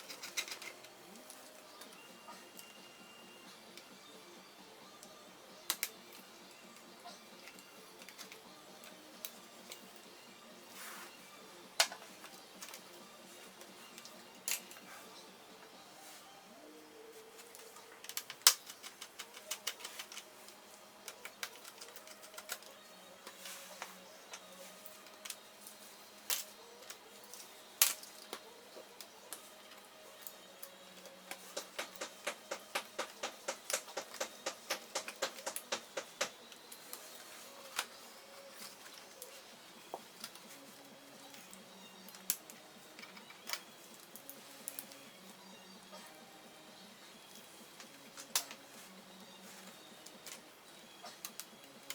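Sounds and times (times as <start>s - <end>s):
clicks and taps of laptop parts: 31.3s - 36.4s.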